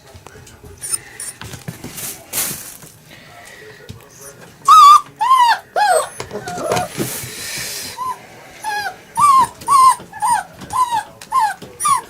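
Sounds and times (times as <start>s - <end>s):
puppies whining: 4.6s - 12.0s.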